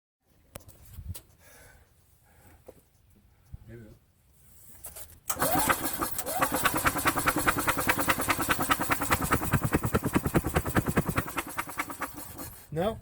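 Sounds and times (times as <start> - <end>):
engine starter cranking: 5.3 - 12.6.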